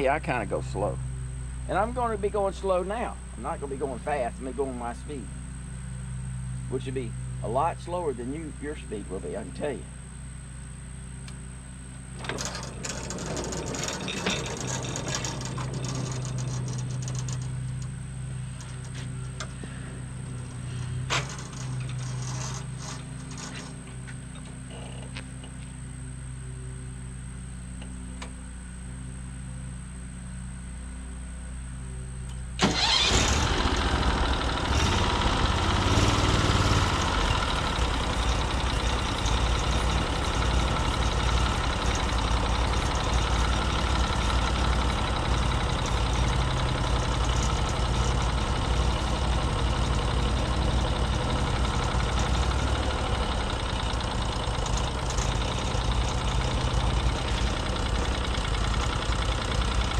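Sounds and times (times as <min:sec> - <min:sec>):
sawmill engine revving: 0:12.1 - 0:24.8, 0:32.6 - 0:59.9.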